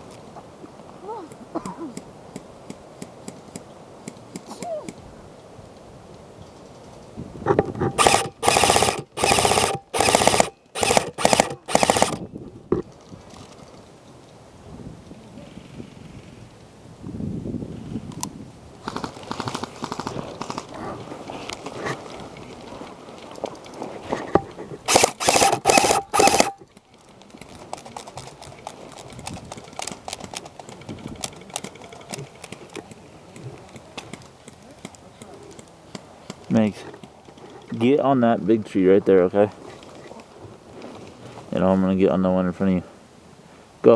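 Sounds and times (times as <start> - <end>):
faint ticks and rustling: 0.0 - 7.8, 12.7 - 14.4, 18.9 - 24.9, 26.6 - 41.8
airsoft rifle bursts: 8.0 - 12.2, 24.9 - 26.6
gearbox whine: 8.0 - 12.3.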